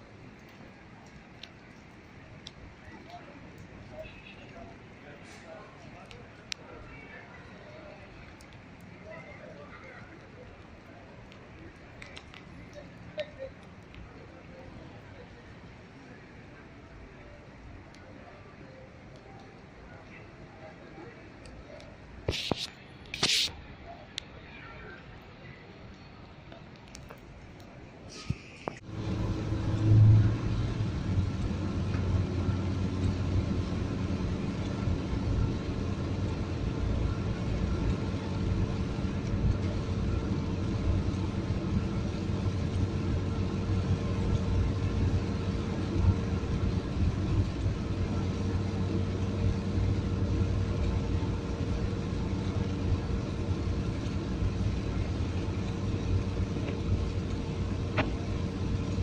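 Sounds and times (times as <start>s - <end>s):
vehicle drone with low hum: 26.3s - 59.0s.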